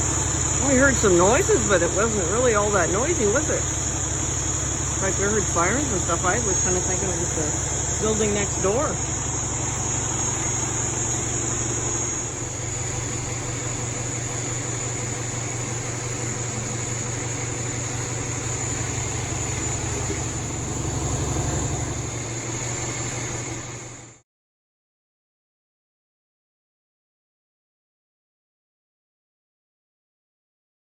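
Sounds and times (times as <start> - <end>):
crickets chirping: 0.0 - 24.0
vehicle engine idling: 0.0 - 24.2.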